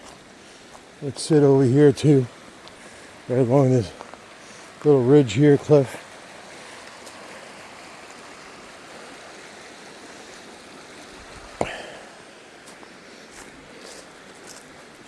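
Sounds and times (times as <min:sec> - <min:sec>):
flowing stream: 0:00.0 - 0:15.0.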